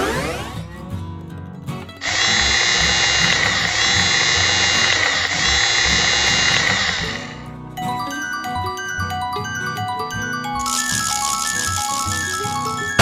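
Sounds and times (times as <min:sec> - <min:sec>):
harsh whirring sound effect: 0:02.0 - 0:07.4
background music: 0:04.2 - 0:13.0.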